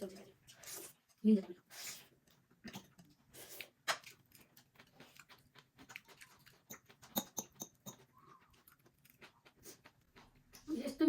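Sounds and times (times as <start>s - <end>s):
person chewing wetly: 2.0s - 10.7s.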